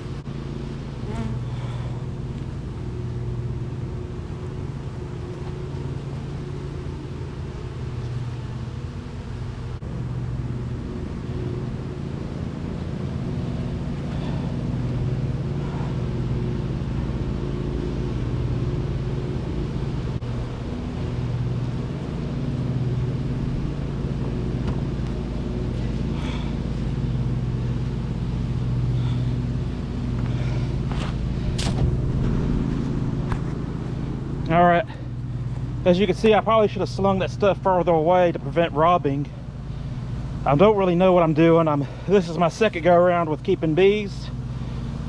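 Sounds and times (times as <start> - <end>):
honeybees buzzing: 0.8 - 1.9.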